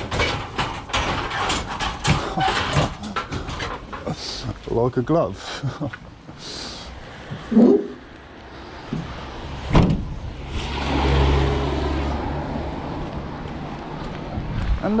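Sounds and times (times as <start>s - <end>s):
vehicle door slamming: 8.9s - 10.2s.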